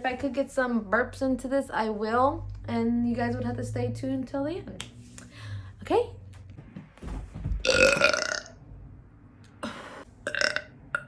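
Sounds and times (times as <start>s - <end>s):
loud long burp: 7.6s - 8.6s, 10.2s - 11.0s.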